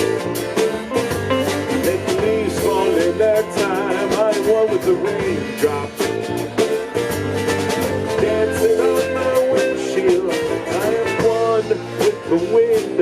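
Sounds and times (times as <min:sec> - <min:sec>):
drums steady beat: 0:00.0 - 0:13.0
electric guitar melody: 0:00.0 - 0:13.0.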